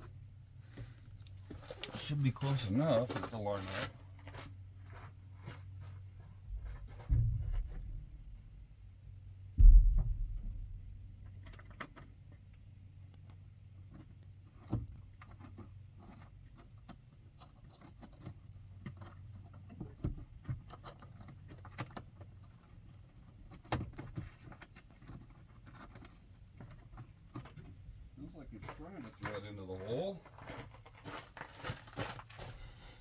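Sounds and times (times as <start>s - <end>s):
faint low hum: 0.0s - 21.6s
heavy thump: 6.4s - 11.7s.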